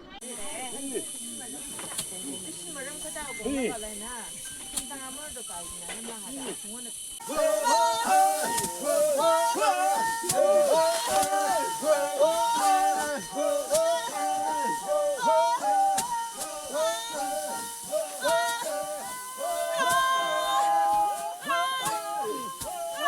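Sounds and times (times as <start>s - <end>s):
song with singing voice: 7.2s - 23.0s.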